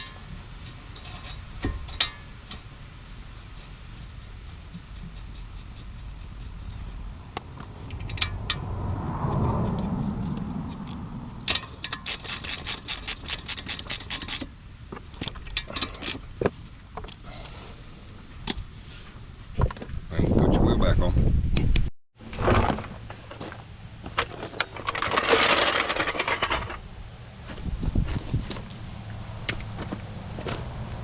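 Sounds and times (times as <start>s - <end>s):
metal parts scraping: 11.5s - 14.5s, 23.0s - 28.2s
ratchet wrench clicking: 11.9s - 14.4s.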